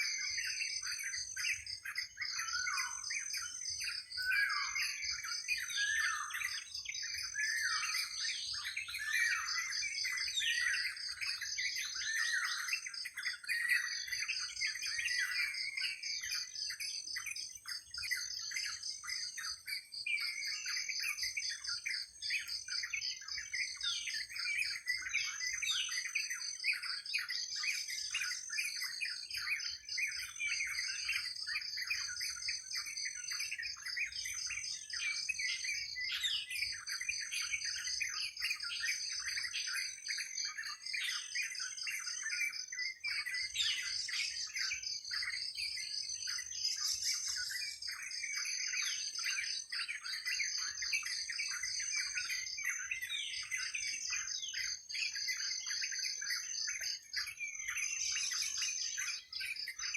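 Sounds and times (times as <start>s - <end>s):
small birds chirping and twittering: 0.0s - 59.9s.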